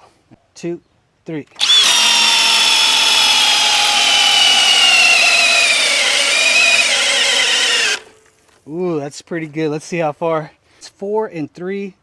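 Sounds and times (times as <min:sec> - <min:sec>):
drill boring into wood: 0:01.6 - 0:08.2.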